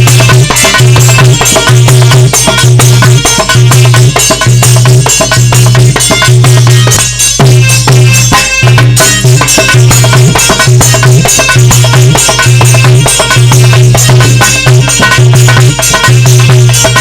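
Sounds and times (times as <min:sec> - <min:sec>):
fast dense drumming: 0:00.0 - 0:17.0.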